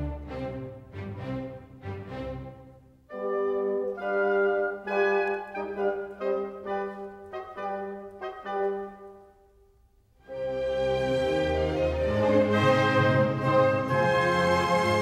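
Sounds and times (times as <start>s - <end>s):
slow wind and brass music: 10.2s - 15.0s.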